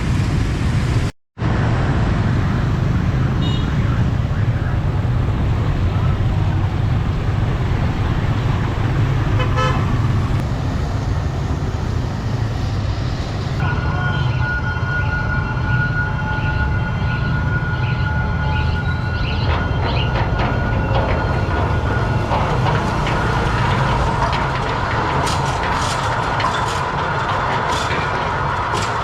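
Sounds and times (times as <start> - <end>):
road traffic rumble: 0.0 - 29.0
vehicle horn toot: 3.4 - 4.1, 9.4 - 10.0.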